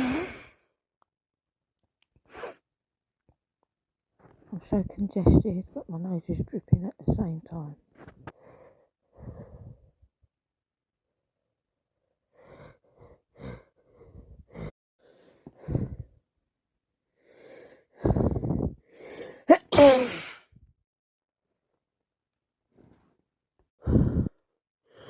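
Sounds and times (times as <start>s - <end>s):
woman breathing with congestion: 8.3s - 9.9s, 12.3s - 16.2s, 23.8s - 25.0s
woman sneezing: 19.5s - 20.5s.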